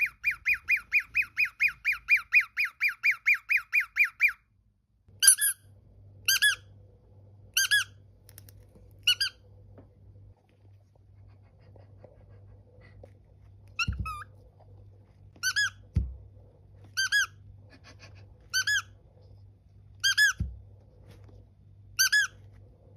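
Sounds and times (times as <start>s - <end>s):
cockatiel chirping: 0.0s - 4.5s, 5.2s - 6.7s, 7.5s - 8.0s, 9.0s - 9.4s, 13.7s - 14.3s, 15.4s - 16.0s, 16.9s - 19.0s, 20.0s - 20.5s, 22.0s - 22.4s.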